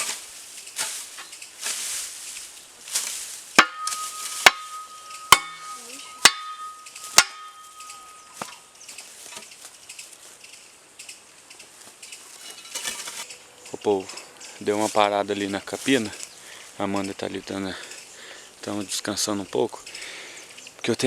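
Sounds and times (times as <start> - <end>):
metal hoe striking ground: 0.0 - 9.7, 12.0 - 13.4
rustling: 0.0 - 18.4.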